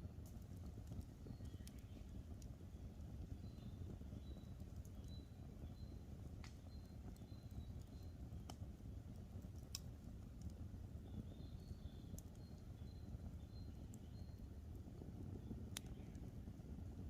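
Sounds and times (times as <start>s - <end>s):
campfire low rumble: 0.0s - 17.0s
wood crackling pops: 0.2s - 14.8s, 15.4s - 16.6s
faint high chirps: 1.2s - 8.6s, 11.0s - 14.7s.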